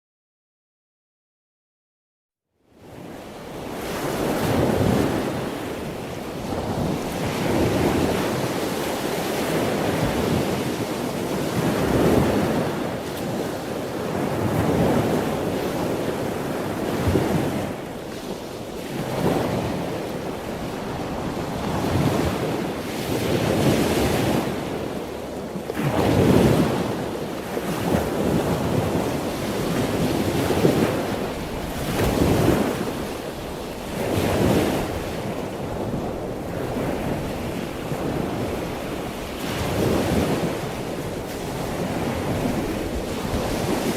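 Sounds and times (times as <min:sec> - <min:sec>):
ocean waves washing in: 0:02.9 - 0:43.9.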